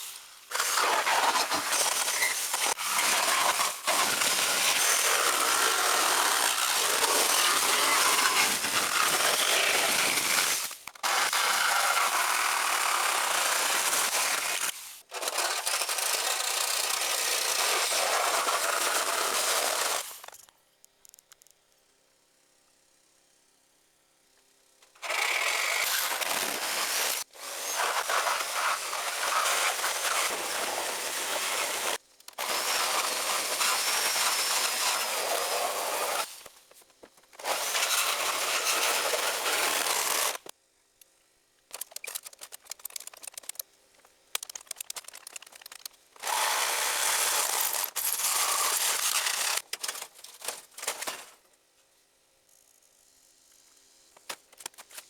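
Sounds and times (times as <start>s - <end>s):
power tool cutting sheet metal: 25.0s - 36.4s, 37.4s - 40.5s, 46.2s - 49.6s.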